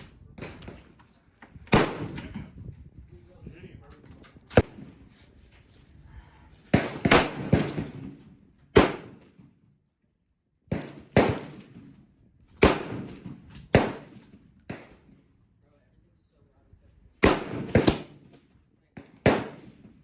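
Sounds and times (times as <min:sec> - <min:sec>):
gunshots: 0:01.7 - 0:02.4, 0:06.7 - 0:09.4, 0:10.7 - 0:11.9, 0:12.6 - 0:15.0, 0:17.2 - 0:18.4, 0:19.0 - 0:20.0.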